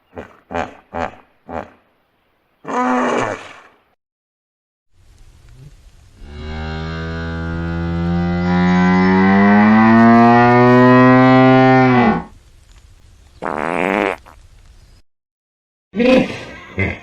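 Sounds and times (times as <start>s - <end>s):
fart sound effect: 13.4s - 14.4s.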